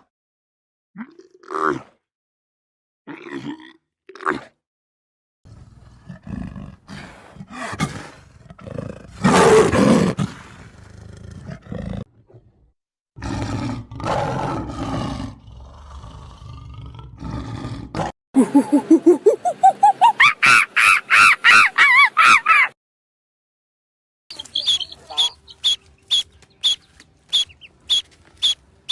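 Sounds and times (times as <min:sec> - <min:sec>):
big cat roaring and growling: 0:05.5 - 0:12.5, 0:13.2 - 0:18.2.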